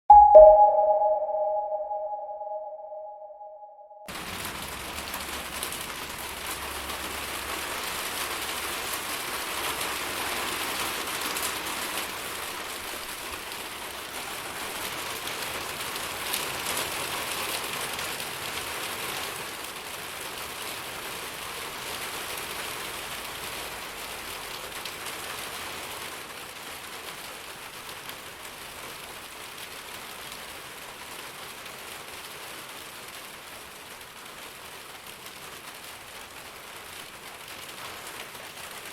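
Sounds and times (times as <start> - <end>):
rain pattering: 4.1 - 38.9.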